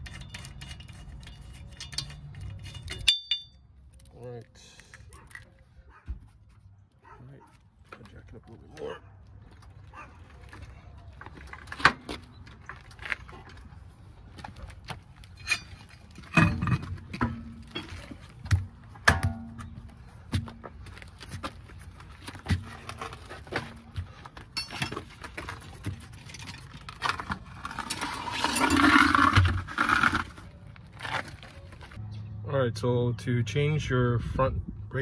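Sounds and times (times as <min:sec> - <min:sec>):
metal parts scraping rattle: 0:00.0 - 0:03.6, 0:15.3 - 0:18.4, 0:24.5 - 0:32.0.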